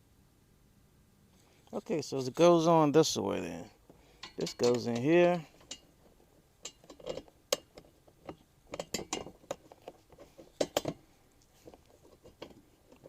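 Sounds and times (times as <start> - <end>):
metal hardware clinking: 4.1 - 11.0.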